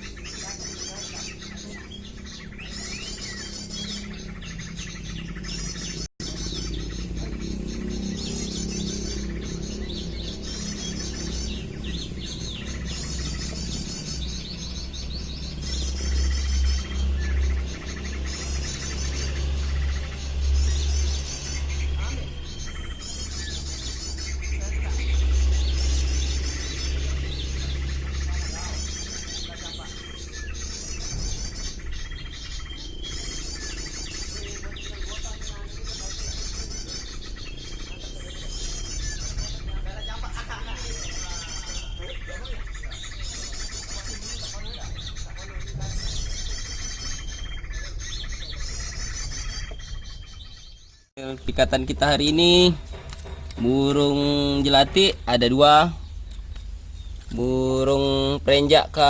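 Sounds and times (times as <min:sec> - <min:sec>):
bird calls through a speaker: 0:00.0 - 0:56.2, 0:57.1 - 0:59.0
low steady rumble: 0:01.4 - 0:43.4.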